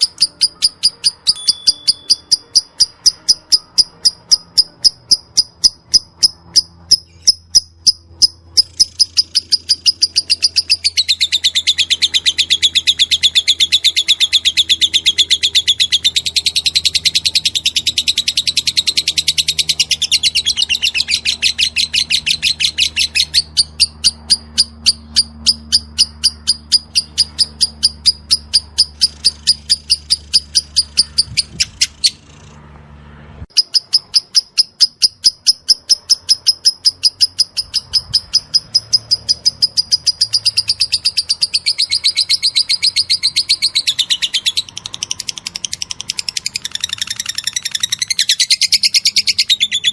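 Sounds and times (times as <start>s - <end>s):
lovebird ticking: 0.0s - 14.2s, 33.5s - 43.7s
lovebird chattering trill: 0.0s - 32.5s, 33.5s - 49.9s.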